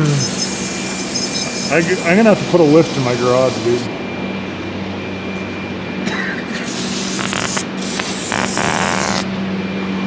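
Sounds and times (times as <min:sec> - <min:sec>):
steady low hum: 0:00.0 - 0:10.0
spraying hiss: 0:06.6 - 0:09.2.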